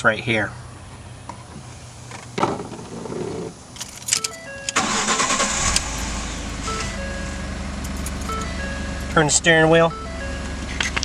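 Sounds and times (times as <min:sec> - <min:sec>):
engine cranking and idling: 0:02.8 - 0:11.0
electronic dash chimes: 0:03.8 - 0:10.9.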